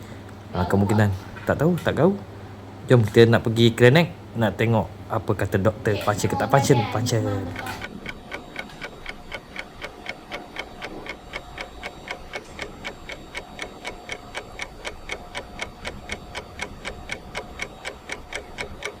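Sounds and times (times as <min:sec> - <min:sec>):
rapid clock ticking: 0:04.5 - 0:19.0.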